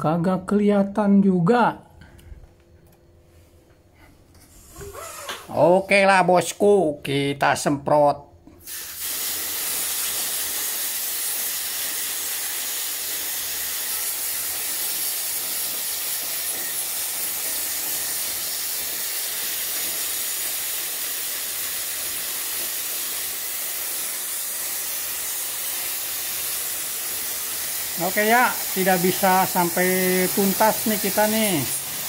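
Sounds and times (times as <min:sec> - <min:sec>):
water jet hissing: 0:08.6 - 0:32.0.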